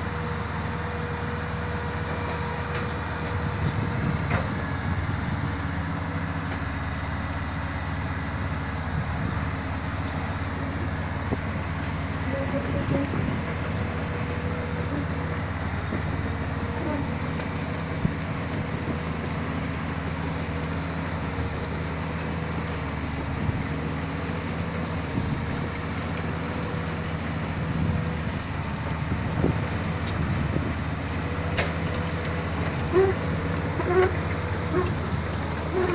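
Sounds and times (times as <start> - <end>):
excavator diesel engine running: 0.0 - 35.9.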